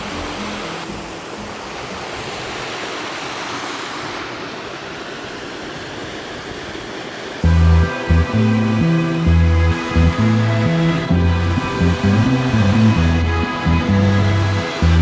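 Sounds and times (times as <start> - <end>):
waterfall rushing: 0.0 - 15.0
music with deep bass: 7.4 - 15.0.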